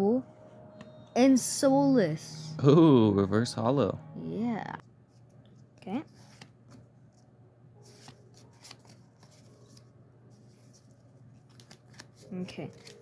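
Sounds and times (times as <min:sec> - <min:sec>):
trading cards rustling: 0:07.8 - 0:13.0.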